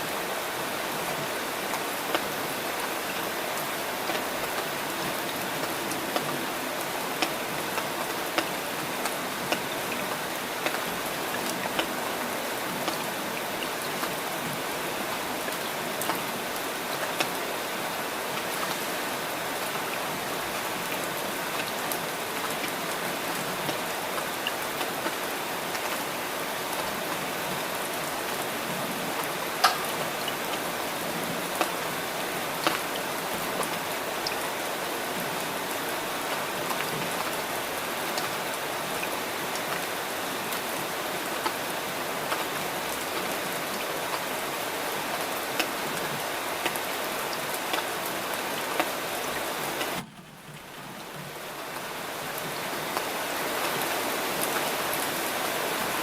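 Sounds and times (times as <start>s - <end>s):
steady rain falling: 0.0s - 56.0s
raindrops ticking: 5.3s - 14.7s, 29.1s - 34.7s, 45.2s - 53.1s.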